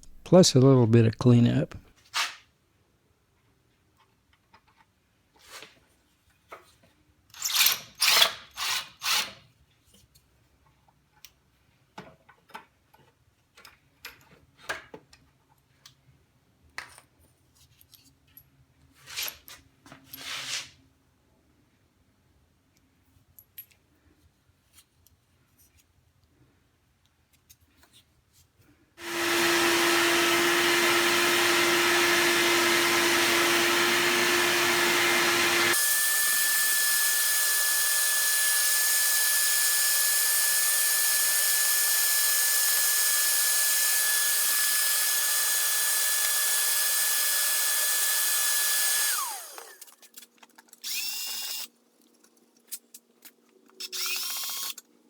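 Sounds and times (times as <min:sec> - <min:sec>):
power tool motor whining: 0:29.0 - 0:50.0, 0:50.8 - 0:51.7, 0:53.8 - 0:54.8.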